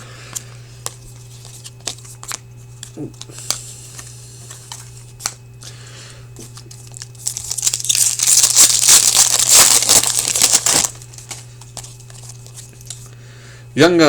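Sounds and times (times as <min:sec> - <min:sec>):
foil wrapper crinkling: 0:06.4 - 0:13.0.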